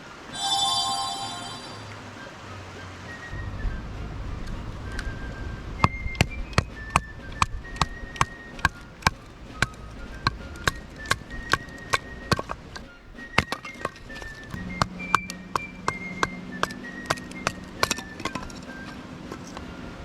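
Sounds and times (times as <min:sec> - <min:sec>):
background music: 0:00.3 - 0:03.2.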